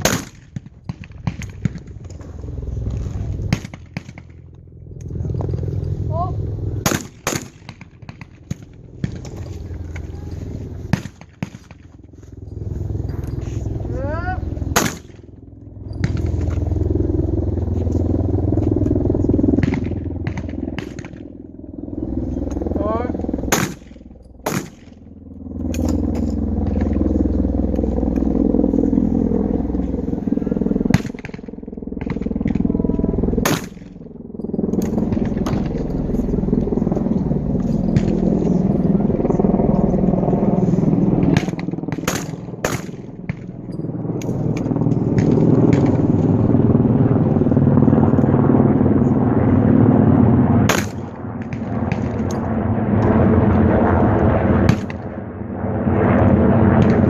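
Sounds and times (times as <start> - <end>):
shotgun shots: 0.0 - 1.8, 6.8 - 9.2, 10.9 - 11.9, 14.7 - 15.2, 23.5 - 25.0, 30.9 - 32.6, 33.4 - 34.0, 41.4 - 43.4, 50.7 - 52.2
low rumble: 0.0 - 57.0.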